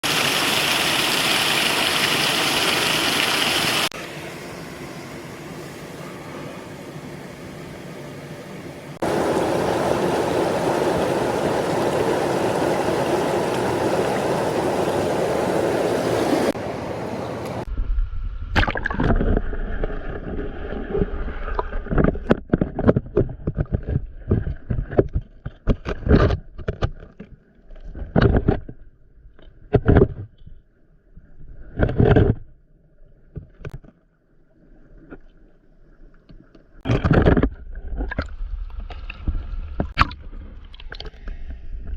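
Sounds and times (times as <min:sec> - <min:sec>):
rushing stream water: 0:00.0 - 0:04.1, 0:08.9 - 0:17.7
low rumble: 0:17.6 - 0:21.8.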